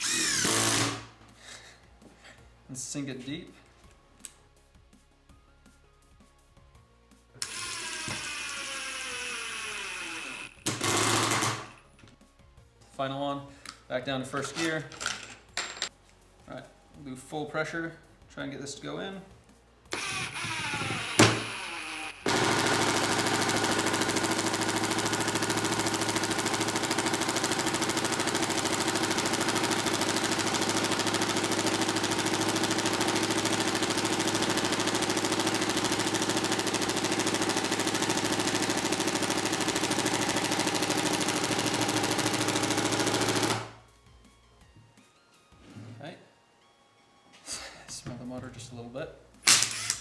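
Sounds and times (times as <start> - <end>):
impact driver hammering: 0.0 - 1.2, 10.6 - 11.8, 19.9 - 43.7, 49.5 - 50.0.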